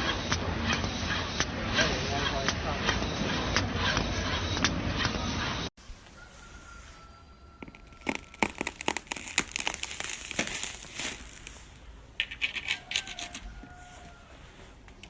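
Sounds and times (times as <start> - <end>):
crinkling and crackling clicks: 7.6 - 13.8.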